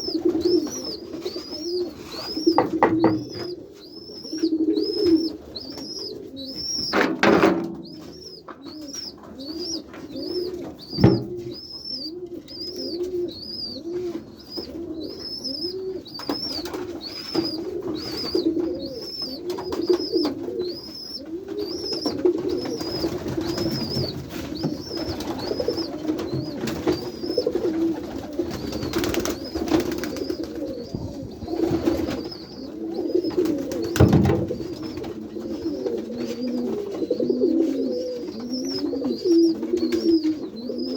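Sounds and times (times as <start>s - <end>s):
pigeons cooing: 0.0s - 40.9s
sharp knocks: 2.6s - 3.6s, 10.9s - 11.6s.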